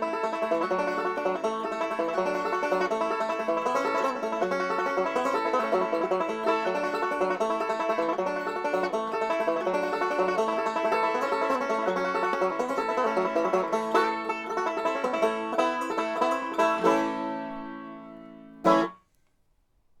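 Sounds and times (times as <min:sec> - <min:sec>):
banjo playing bluegrass: 0:00.0 - 0:19.0.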